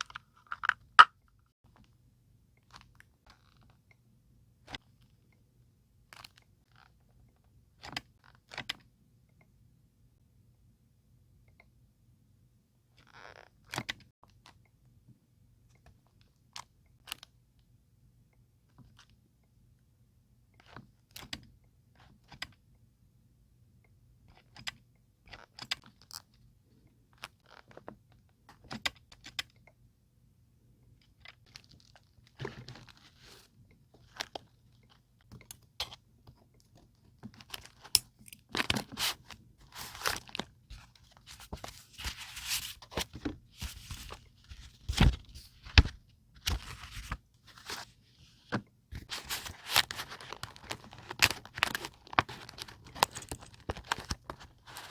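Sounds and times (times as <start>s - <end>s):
paper rustling and crinkling: 38.8s - 54.9s.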